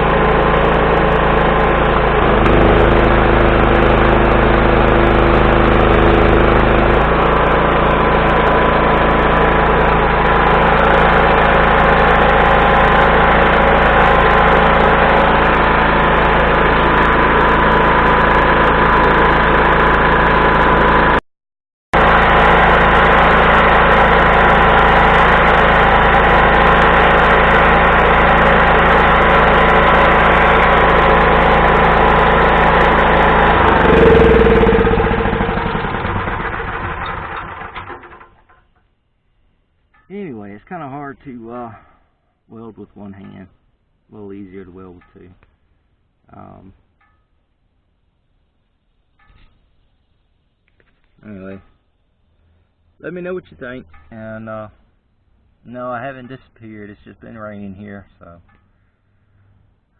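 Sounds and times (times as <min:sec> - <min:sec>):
welder engine running: 0:00.0 - 0:21.2, 0:22.0 - 0:38.7.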